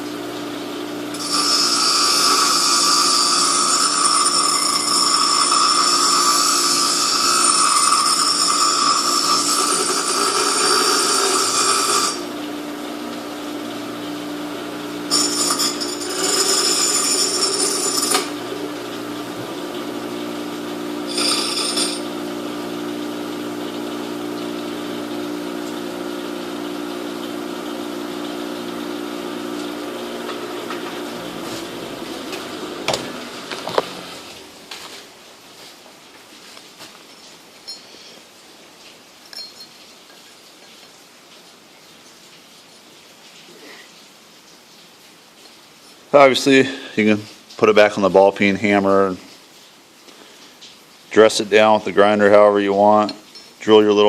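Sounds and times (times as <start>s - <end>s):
electric grinder grinding metal: 0.0s - 34.5s
grinder motor running free: 1.1s - 12.3s, 14.9s - 24.0s.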